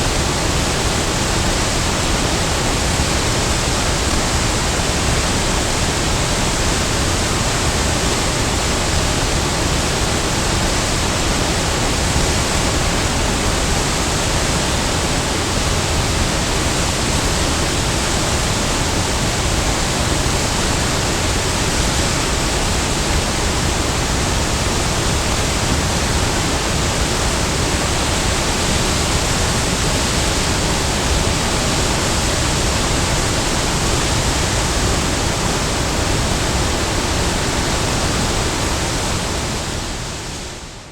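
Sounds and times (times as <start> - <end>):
waterfall roaring: 0.0 - 40.9.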